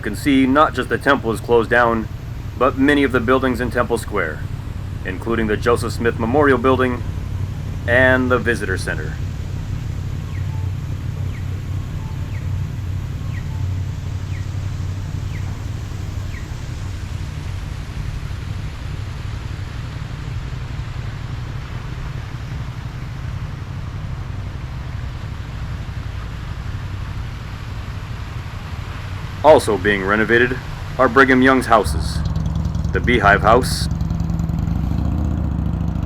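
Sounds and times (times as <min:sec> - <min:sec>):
city street traffic rumble: 0:00.0 - 0:36.0
short high chirps: 0:10.0 - 0:16.6.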